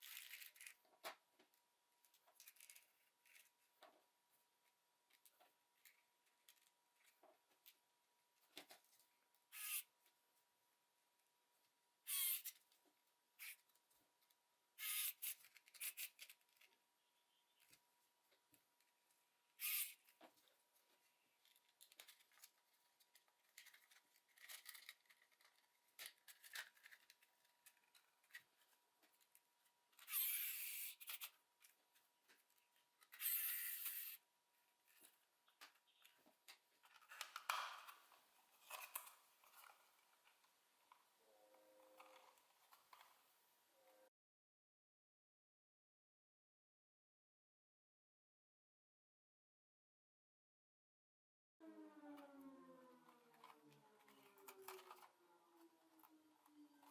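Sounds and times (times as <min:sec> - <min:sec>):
plastic scraping: 0:52.1 - 0:56.9.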